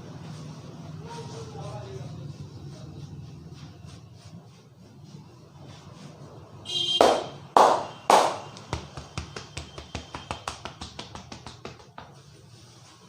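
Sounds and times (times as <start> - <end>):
hands slapping in massage: 7.0 - 12.4
light hand taps: 8.2 - 12.3.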